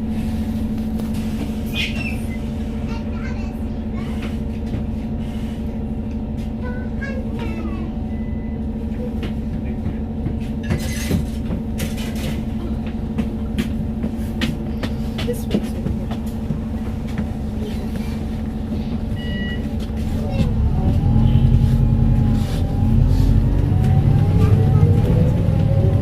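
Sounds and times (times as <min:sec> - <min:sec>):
bus engine rumble: 0:00.0 - 0:26.0
rattles and knocks: 0:09.2 - 0:17.5.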